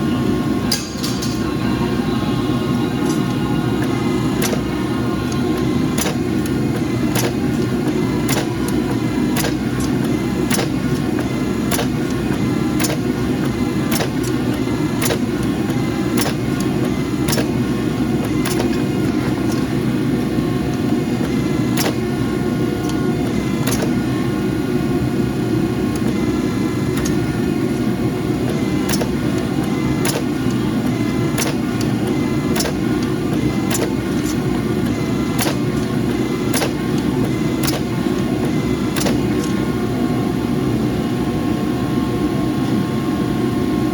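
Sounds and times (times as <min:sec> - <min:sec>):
sharp irregular clicks and taps: 0:05.3 - 0:17.6, 0:18.2 - 0:19.7, 0:20.7 - 0:22.1, 0:22.8 - 0:24.0, 0:25.9 - 0:26.2, 0:26.9 - 0:27.3, 0:28.5 - 0:39.5.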